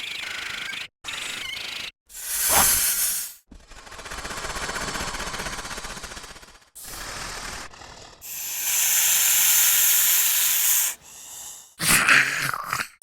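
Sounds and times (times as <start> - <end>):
loud monster hiss: 2.1 - 3.4, 6.8 - 12.7.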